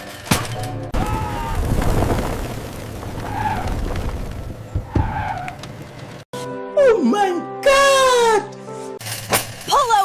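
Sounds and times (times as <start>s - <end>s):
cart rumbling clatter: 0.0s - 6.2s.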